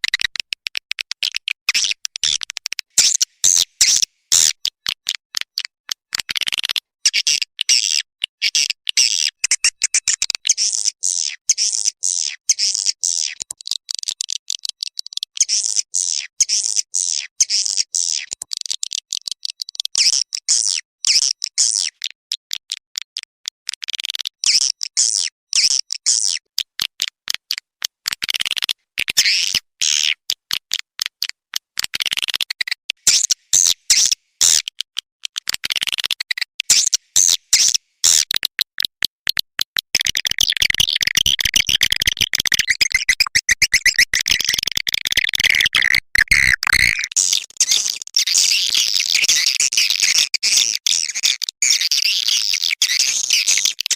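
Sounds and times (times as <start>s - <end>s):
swiftlet chirps and twittering: 40.0s - 49.5s.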